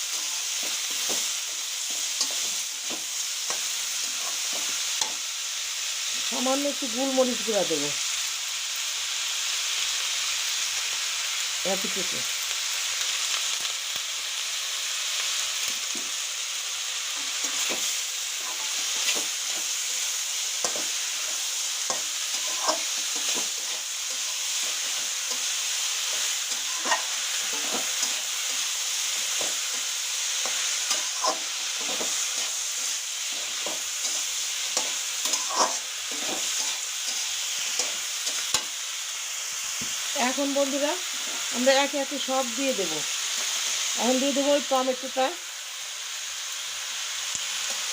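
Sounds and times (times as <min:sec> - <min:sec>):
vegetables sizzling in a pan: 0:00.0 - 0:47.9
utensil scraping and knocking pan: 0:26.6 - 0:28.2.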